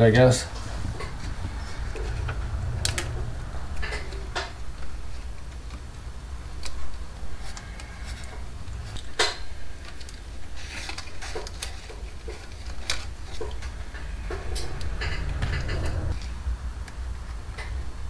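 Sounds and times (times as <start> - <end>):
steady low hum: 0.0 - 9.8, 12.5 - 16.8.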